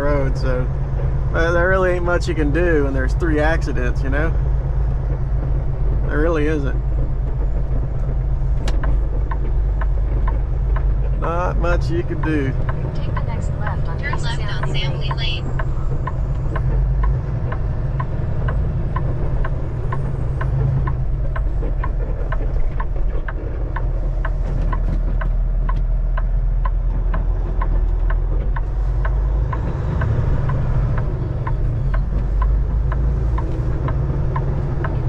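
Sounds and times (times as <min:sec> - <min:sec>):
diesel engine drone: 0:00.0 - 0:35.0
turn signal ticking: 0:00.0 - 0:35.0.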